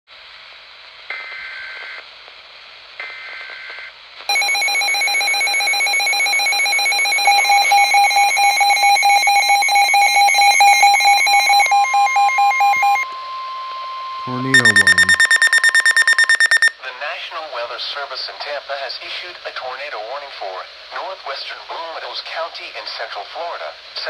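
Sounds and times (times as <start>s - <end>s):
harsh pulsing alarm tone: 14.3s - 16.7s
steady tone: 14.3s - 16.7s.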